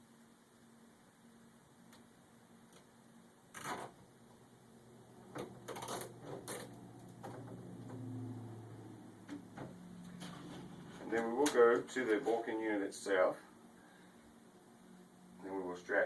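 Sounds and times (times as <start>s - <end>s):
low hum: 0.0s - 15.8s
sharp clicks and rustles: 3.5s - 4.0s, 5.3s - 8.1s
cable scraping: 10.0s - 12.6s.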